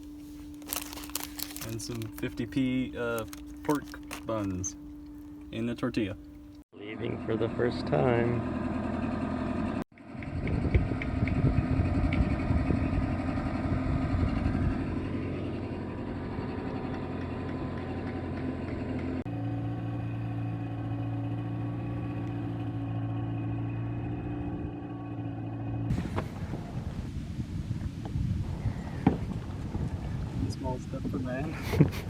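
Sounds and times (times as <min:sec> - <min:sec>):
boat engine running: 0:00.0 - 0:06.6.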